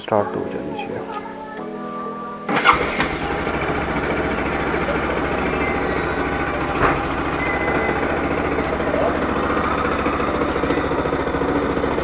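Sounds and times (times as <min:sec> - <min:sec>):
motorcycle engine starting and idling: 0:02.5 - 0:12.0.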